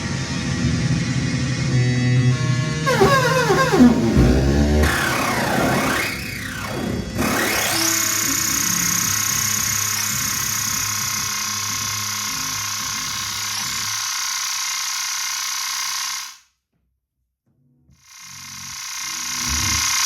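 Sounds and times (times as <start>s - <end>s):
low held tones: 2.9s - 10.0s
bright hissing electronic drone: 2.9s - 16.4s.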